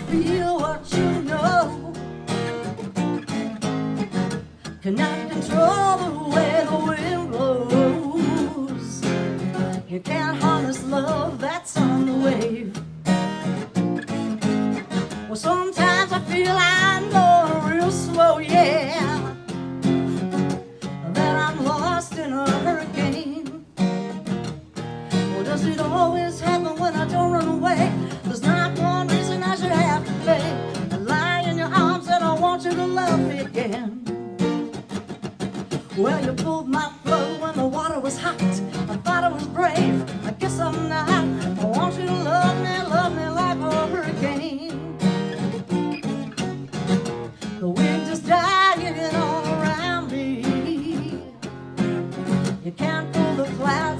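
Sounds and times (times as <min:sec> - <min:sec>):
person singing: 0:00.0 - 0:02.2, 0:04.6 - 0:12.8, 0:15.0 - 0:19.4, 0:20.9 - 0:23.7, 0:25.1 - 0:34.1, 0:35.8 - 0:45.0, 0:47.3 - 0:51.4, 0:52.3 - 0:53.9
acoustic guitar: 0:00.0 - 0:53.9.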